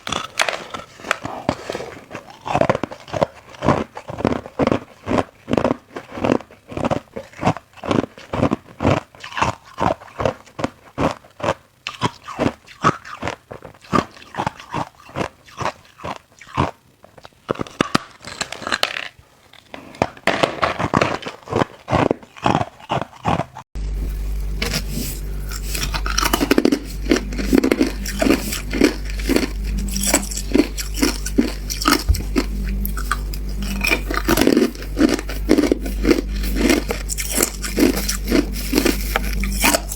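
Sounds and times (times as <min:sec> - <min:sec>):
steady low hum: 0:23.8 - 0:39.9
ice being crunched: 0:24.0 - 0:39.9.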